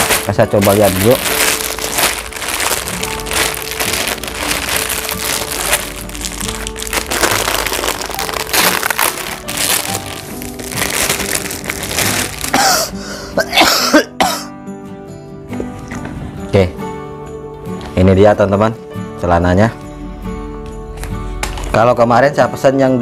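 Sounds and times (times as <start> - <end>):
packaging rustling and tearing: 0.0 - 13.0
background music: 0.0 - 23.0.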